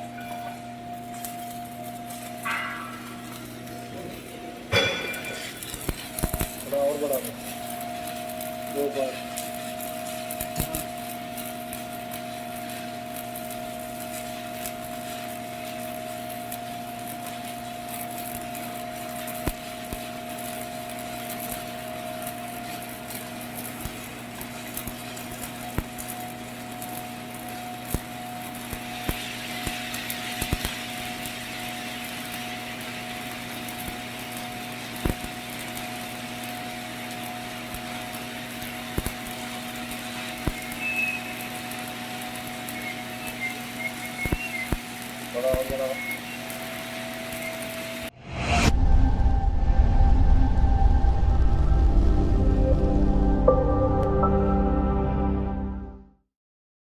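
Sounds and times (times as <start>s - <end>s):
welding machine hum: 0.0s - 48.2s
welding arc crackling: 0.0s - 48.6s.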